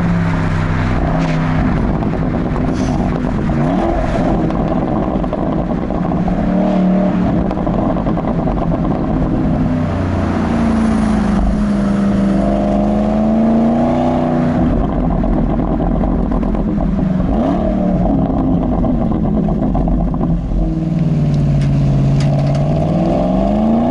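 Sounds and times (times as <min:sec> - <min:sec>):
car exhaust revving: 0:00.0 - 0:23.9
exhaust pops crackling: 0:00.8 - 0:06.6, 0:07.2 - 0:09.7, 0:14.5 - 0:23.2.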